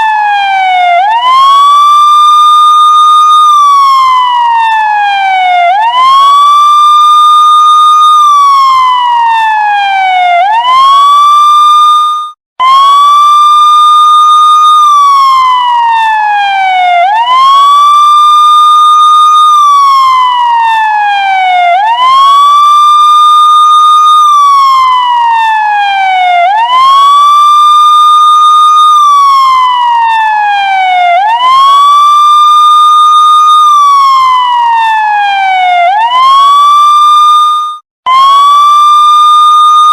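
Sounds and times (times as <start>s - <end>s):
police siren wailing: 0.0s - 39.9s.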